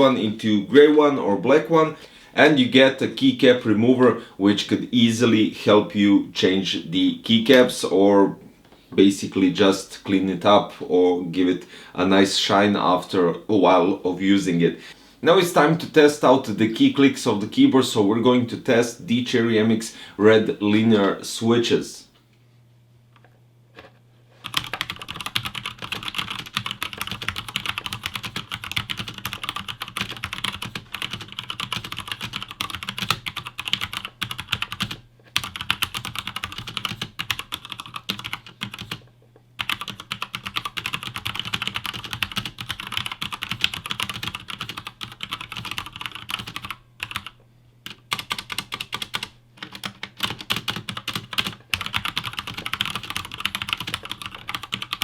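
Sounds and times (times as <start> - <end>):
typing on mechanical keyboard: 24.4 - 39.0, 39.6 - 55.0.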